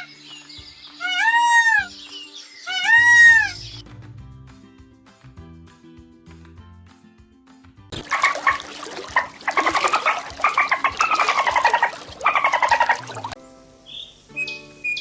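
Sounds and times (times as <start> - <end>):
soft background music: 0.0 - 15.0
animal rattling call: 8.1 - 13.4.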